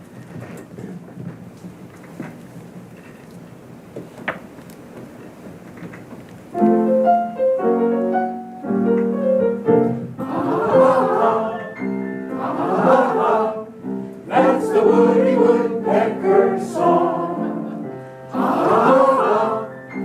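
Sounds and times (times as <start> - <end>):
low room noise: 0.0 - 20.0
piano playing block chords: 6.5 - 20.0
choir voices: 10.1 - 20.0.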